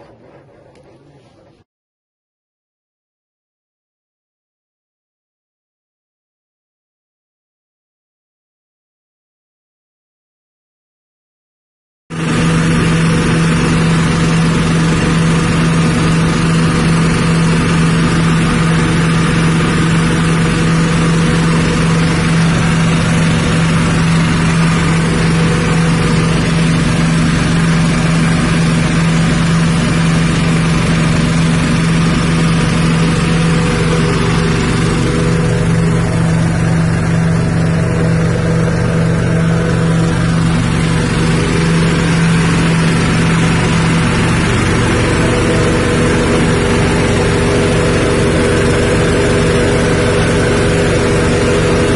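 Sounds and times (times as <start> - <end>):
grinding machine engine humming: 0.0 - 1.6, 12.1 - 51.9.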